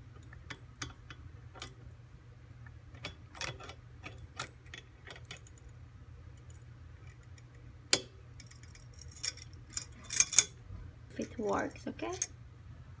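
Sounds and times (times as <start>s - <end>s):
metal lamp hardware clicking: 0.2s - 1.8s, 2.9s - 5.6s, 12.1s - 12.4s.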